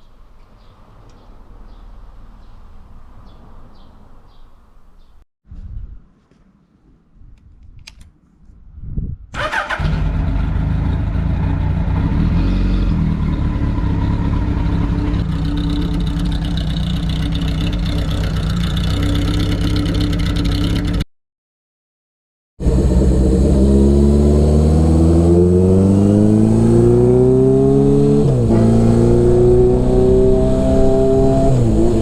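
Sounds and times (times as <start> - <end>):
motorcycle engine idling: 13.0 - 21.0.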